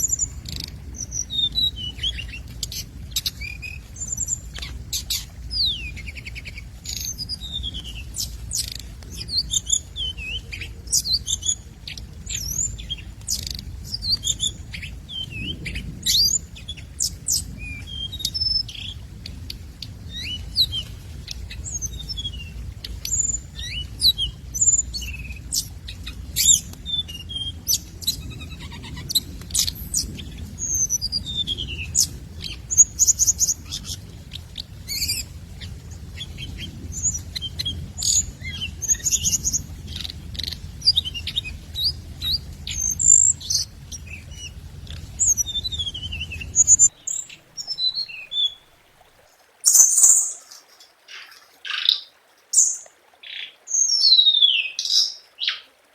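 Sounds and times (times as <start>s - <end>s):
bird singing whistled trills: 0.0s - 4.4s, 12.3s - 19.0s, 21.6s - 32.1s, 45.2s - 48.6s, 53.7s - 55.7s.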